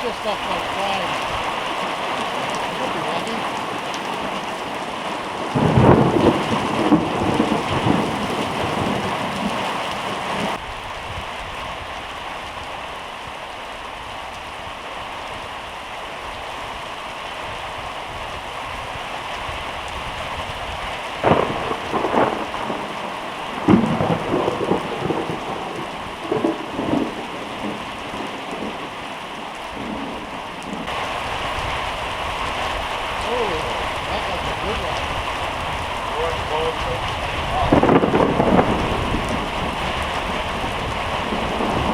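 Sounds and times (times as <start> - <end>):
steady rain: 0.0 - 41.9
thunder cracks and rumbles: 5.4 - 10.7, 21.2 - 28.8, 32.6 - 41.9.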